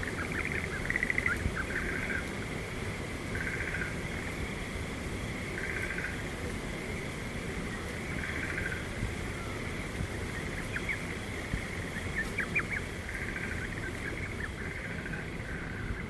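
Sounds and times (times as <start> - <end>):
small birds chirping: 0.0 - 2.3, 7.6 - 16.0.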